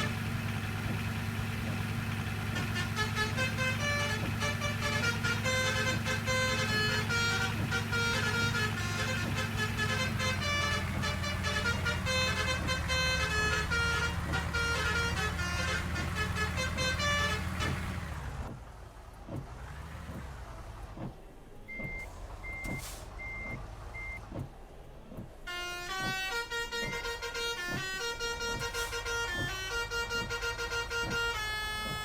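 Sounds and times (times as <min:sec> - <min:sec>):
bus horn playing a tune: 0:00.0 - 0:18.5, 0:25.4 - 0:32.0
bus engine drone: 0:00.0 - 0:32.0.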